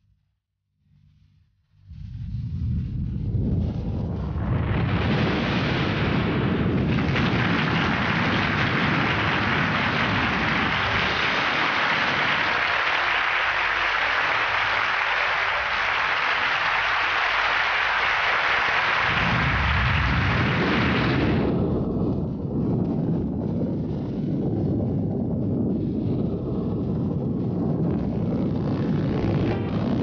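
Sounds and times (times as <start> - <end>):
deep rumble: 0.9 - 30.0
audience applauding: 5.9 - 21.7, 28.6 - 30.0.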